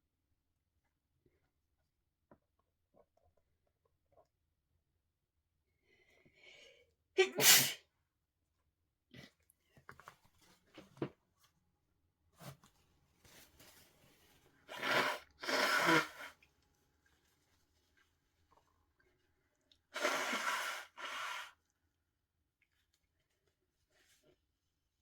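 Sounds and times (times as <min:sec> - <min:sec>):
person sneezing: 0:07.2 - 0:07.8.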